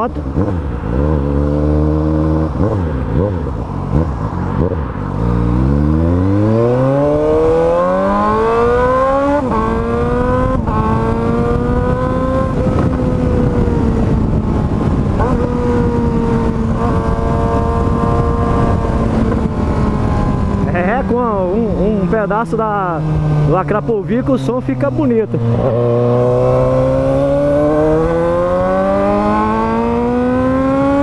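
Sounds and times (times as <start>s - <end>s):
motorcycle engine accelerating: 0.0s - 31.0s.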